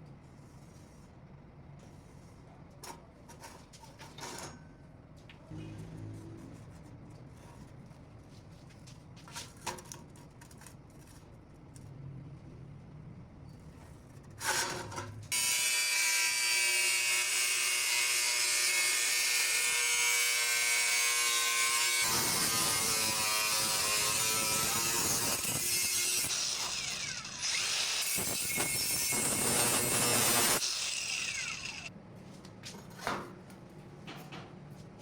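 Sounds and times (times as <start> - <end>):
electric power tool whining: 22.0 - 31.9.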